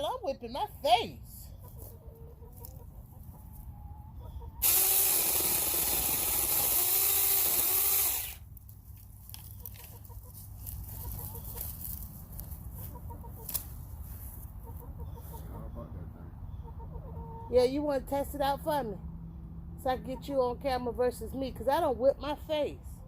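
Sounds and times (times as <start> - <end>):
mini chainsaw cutting twigs: 4.6 - 9.9.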